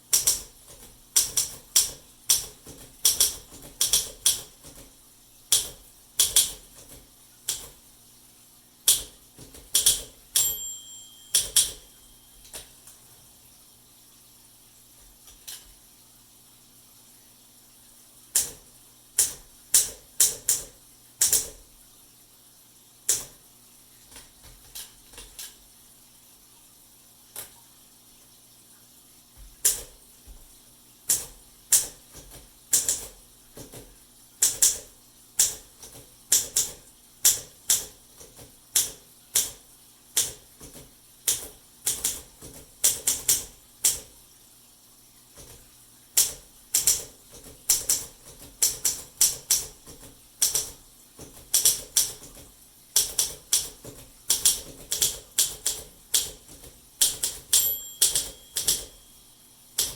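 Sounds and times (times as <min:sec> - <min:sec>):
typewriter keystroke clacks: 0:00.1 - 0:04.9, 0:05.5 - 0:07.8, 0:08.9 - 0:10.6, 0:11.3 - 0:11.9, 0:18.3 - 0:21.7, 0:23.1 - 0:23.4, 0:24.1 - 0:25.6, 0:29.6 - 0:30.0, 0:31.1 - 0:39.6, 0:40.2 - 0:44.1, 0:46.2 - 0:59.0.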